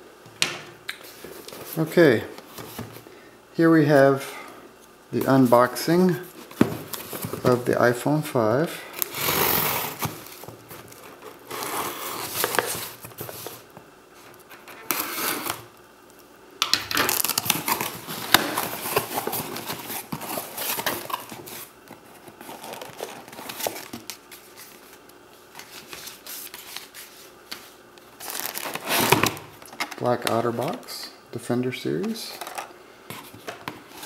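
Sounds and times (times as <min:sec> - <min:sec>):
plastic packaging crinkling: 0:16.9 - 0:27.0, 0:28.1 - 0:30.2.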